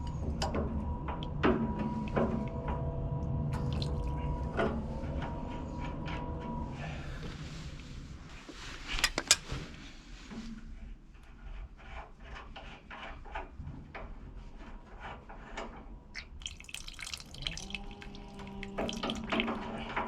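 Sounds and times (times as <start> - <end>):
low hum: 0.0 - 8.9, 16.3 - 20.0
water dripping: 3.5 - 4.3, 16.2 - 19.8
water running: 3.5 - 4.5, 16.2 - 19.9.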